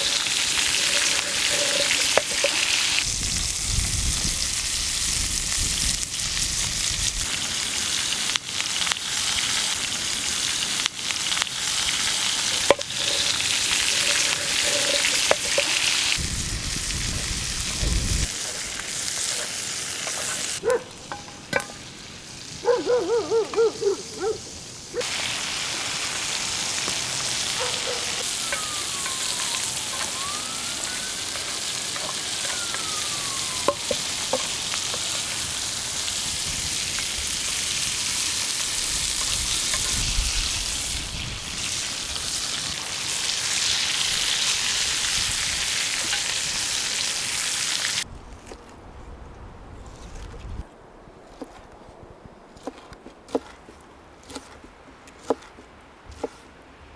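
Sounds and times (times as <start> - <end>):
food sizzling in a pan: 0.0 - 22.7, 24.5 - 48.1
short high-pitched calls: 28.0 - 34.2.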